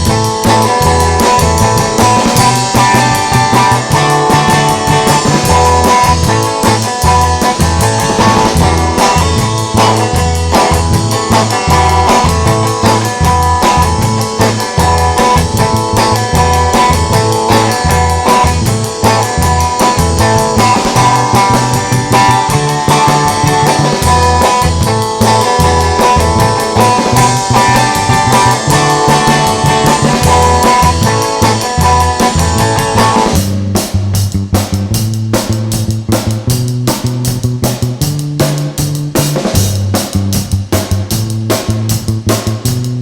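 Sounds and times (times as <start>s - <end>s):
bass guitar: 0.0s - 43.0s
drum kit: 0.0s - 43.0s
electric guitar: 0.0s - 43.0s.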